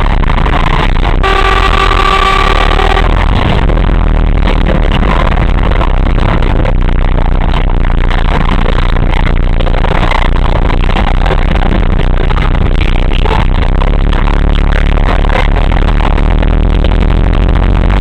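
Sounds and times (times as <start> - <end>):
loud distorted vehicle noise: 0.0 - 18.0
vehicle horn steady tone: 1.2 - 3.6.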